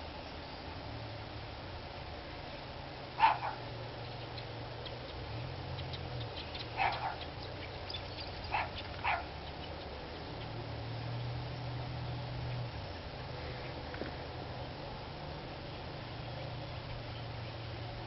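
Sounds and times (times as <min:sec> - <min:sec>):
dog barking: 0:03.2 - 0:03.6, 0:06.8 - 0:07.3, 0:08.5 - 0:09.3.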